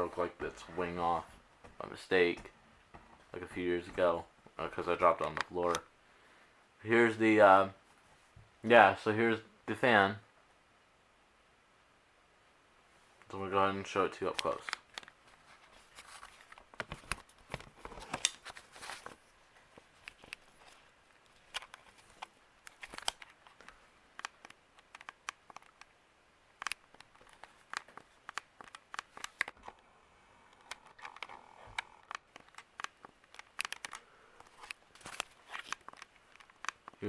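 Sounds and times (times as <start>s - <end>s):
crinkly rustles: 14.4s - 23.8s, 32.3s - 37.0s.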